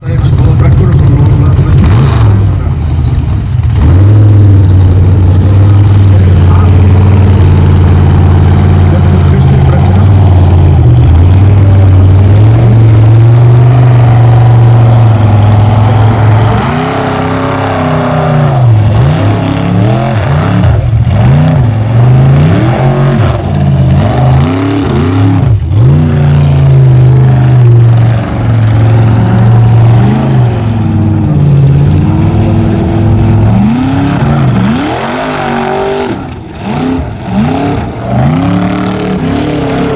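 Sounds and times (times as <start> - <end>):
truck engine revving: 0.0 - 39.9.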